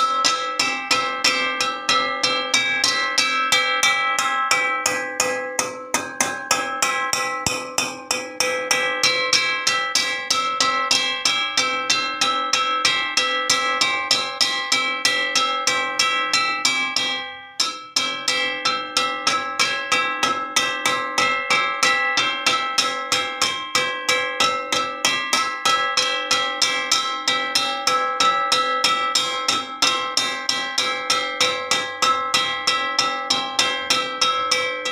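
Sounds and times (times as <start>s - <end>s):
wok struck ringing metallically: 0.0s - 34.9s.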